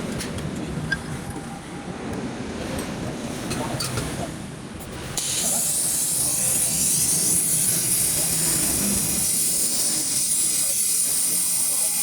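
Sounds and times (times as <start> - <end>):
welding torch flame hissing: 5.2 - 12.0.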